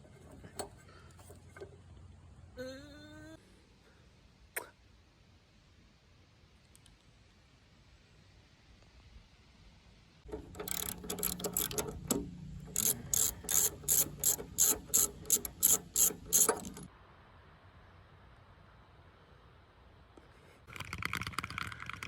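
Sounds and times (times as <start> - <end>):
socket ratchet wrench clicking: 10.3 - 16.9.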